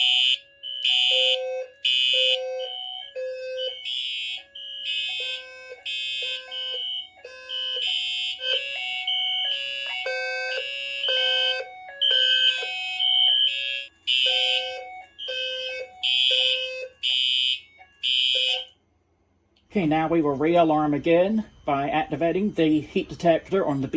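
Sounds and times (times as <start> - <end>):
high shrill alarm horns: 0.0 - 18.8
low buzzing alarm tone: 0.0 - 18.8.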